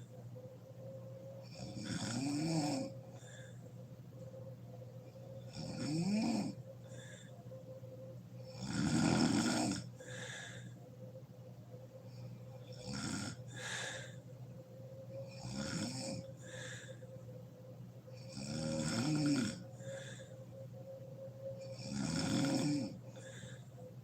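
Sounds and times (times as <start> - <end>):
faint steady hum: 0.0 - 24.0
woman snoring: 1.4 - 3.6, 5.3 - 7.3, 8.4 - 10.8, 12.2 - 14.2, 15.2 - 17.0, 18.1 - 20.3, 21.6 - 23.7.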